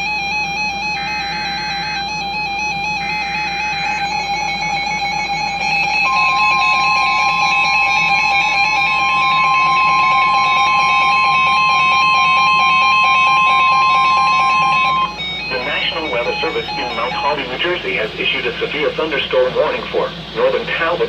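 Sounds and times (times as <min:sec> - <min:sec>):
steady high alarm tone: 0:00.0 - 0:21.0
background music: 0:05.6 - 0:18.5.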